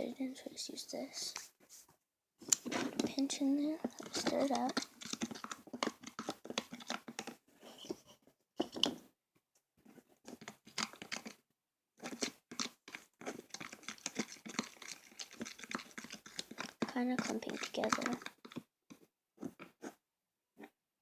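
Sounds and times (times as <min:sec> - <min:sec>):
slime stirred in a bowl: 0:02.4 - 0:09.0, 0:09.8 - 0:11.4, 0:12.0 - 0:20.0.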